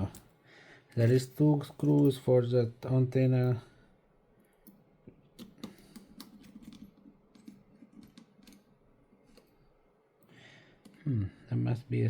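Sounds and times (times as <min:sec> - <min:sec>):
small tools clicking and tapping: 0:04.6 - 0:09.6.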